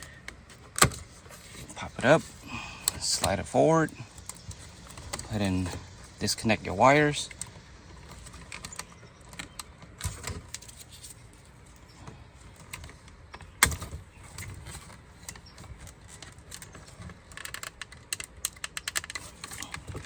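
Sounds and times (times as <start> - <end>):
plastic clicking and rattling: 7.3 - 11.2, 11.8 - 20.0.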